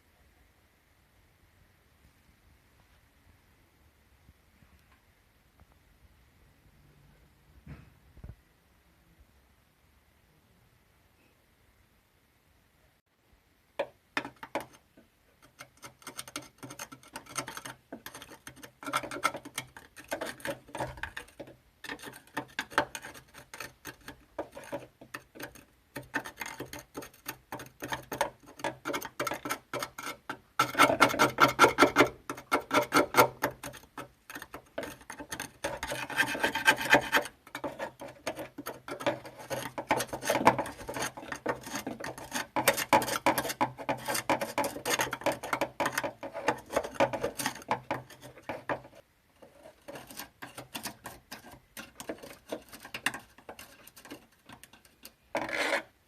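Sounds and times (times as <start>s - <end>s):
hand sanding metal: 34.4s - 54.7s.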